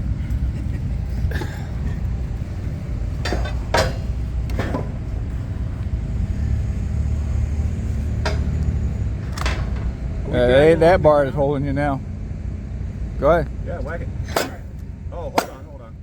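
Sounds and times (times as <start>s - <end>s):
engine rumbling: 0.0s - 16.0s
sharp metallic clanks: 3.1s - 5.6s, 7.6s - 10.4s, 14.2s - 15.8s.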